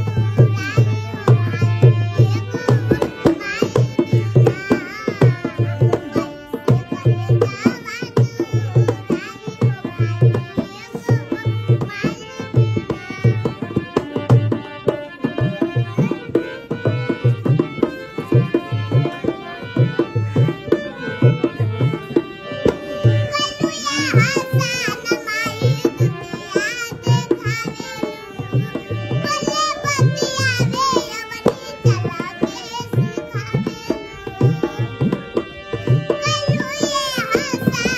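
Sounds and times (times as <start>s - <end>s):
instrumental melody: 0.0s - 37.9s
tabla beat: 0.0s - 37.9s.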